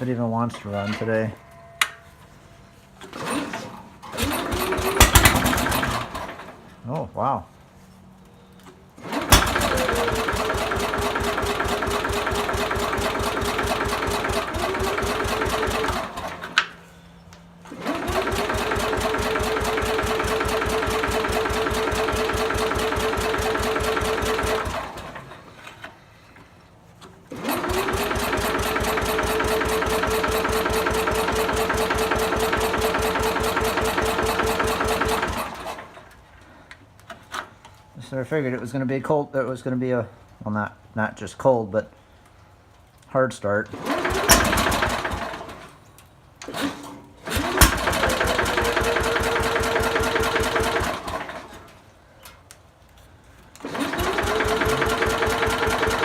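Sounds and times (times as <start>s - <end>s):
electric starter cranking engine: 3.0s - 6.7s, 9.0s - 16.7s, 17.6s - 25.9s, 27.2s - 36.2s, 43.7s - 45.8s, 46.4s - 51.8s, 53.5s - 56.0s.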